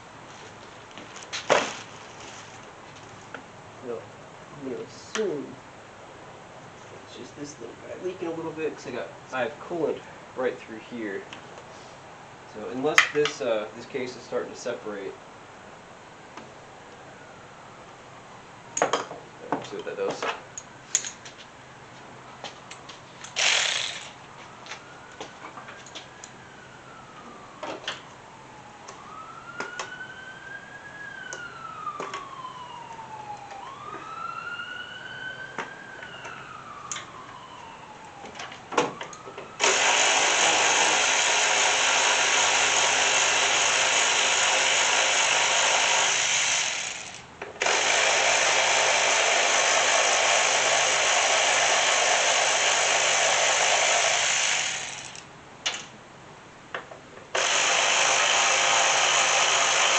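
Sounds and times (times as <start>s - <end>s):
distant siren wailing: 16.8s - 18.1s, 24.1s - 40.7s
loud steady rushing hiss: 39.6s - 55.6s.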